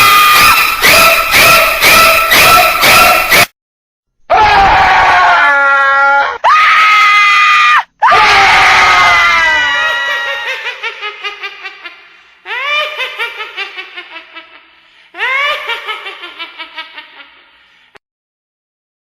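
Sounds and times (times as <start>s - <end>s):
shrill cackling laugh: 9.8s - 17.6s.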